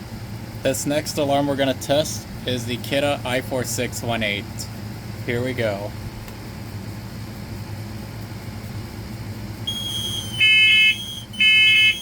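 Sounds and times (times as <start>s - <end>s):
low steady hum: 0.0s - 12.0s
high steady alarm tone: 9.7s - 12.0s
pulsing alarm beeps: 9.7s - 12.0s.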